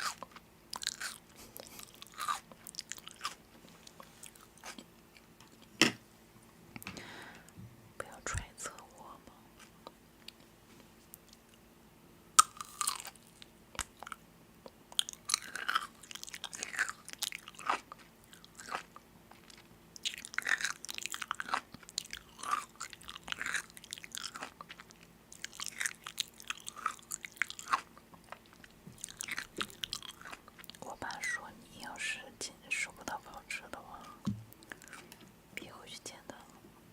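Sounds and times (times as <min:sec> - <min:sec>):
chewing crunchy food: 0:00.0 - 0:05.7, 0:12.4 - 0:32.2, 0:33.2 - 0:35.2.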